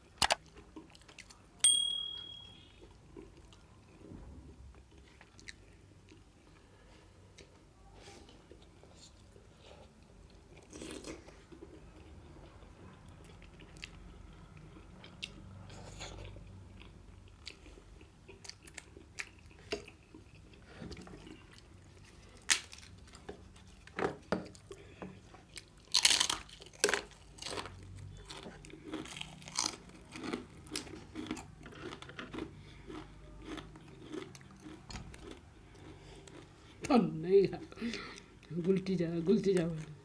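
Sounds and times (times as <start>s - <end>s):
chewing and wet mouth smacks: 10.3s - 23.2s.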